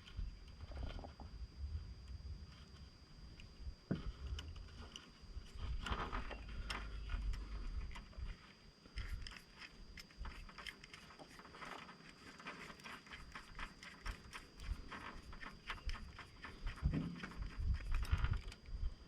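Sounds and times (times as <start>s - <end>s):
wind rumble on microphone: 0.0s - 8.4s, 13.6s - 19.0s
metal clicks and scrapes of tools: 6.3s - 18.8s.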